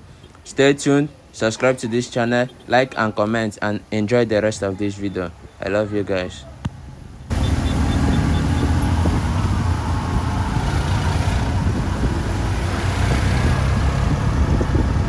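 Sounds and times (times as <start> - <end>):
vehicle engine running: 6.9 - 15.0
tyres hissing on wet road: 7.3 - 14.6.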